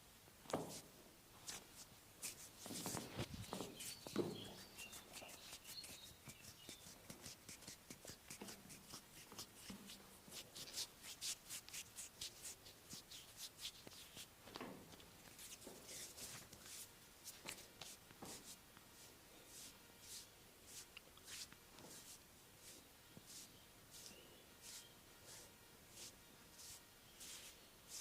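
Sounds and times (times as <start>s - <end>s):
hands rubbing over bare skin: 0.6s - 28.0s
dull presses on skin: 1.5s - 14.3s.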